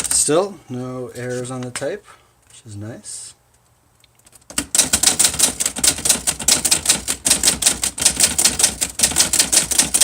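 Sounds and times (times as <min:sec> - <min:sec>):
typewriter keys clacking: 0:04.2 - 0:10.0.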